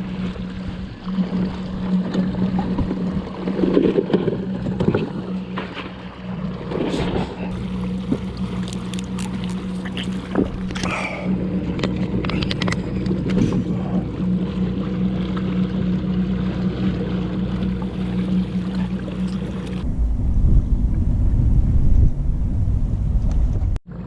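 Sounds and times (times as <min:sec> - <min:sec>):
water washing along hull: 0:00.0 - 0:24.0
electric motor humming: 0:07.5 - 0:19.9.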